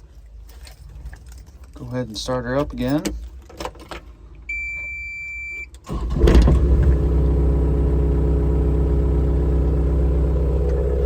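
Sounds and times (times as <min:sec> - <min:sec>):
diesel engine starting and idling: 0:05.8 - 0:11.0.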